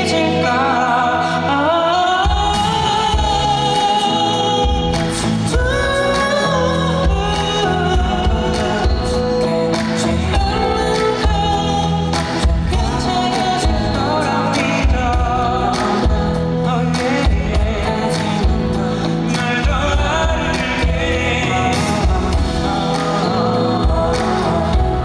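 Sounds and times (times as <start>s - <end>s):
live band playing pop ballad: 0.0s - 25.0s
person singing: 0.0s - 25.0s.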